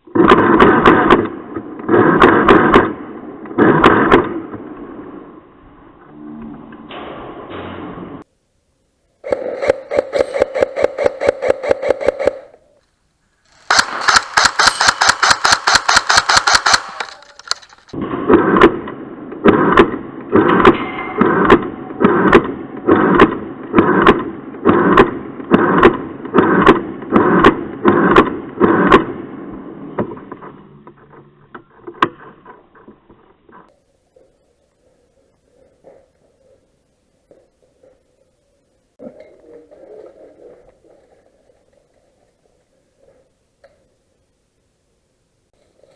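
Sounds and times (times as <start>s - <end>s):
airsoft gun firing full-auto: 9.3s - 12.5s, 13.5s - 17.2s.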